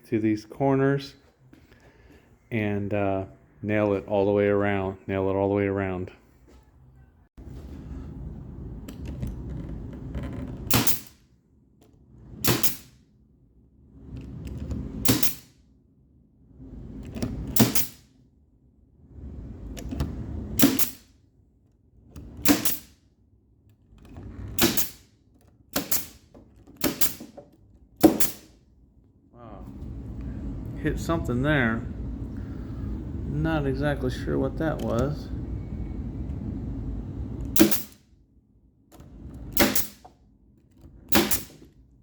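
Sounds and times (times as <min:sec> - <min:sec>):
brad nailer firing: 0:10.6 - 0:11.2, 0:12.4 - 0:13.0, 0:15.0 - 0:15.6, 0:17.2 - 0:18.1, 0:20.5 - 0:21.1, 0:22.2 - 0:23.0, 0:24.4 - 0:25.1, 0:25.7 - 0:28.6, 0:37.4 - 0:38.1, 0:39.3 - 0:40.2, 0:41.0 - 0:41.8.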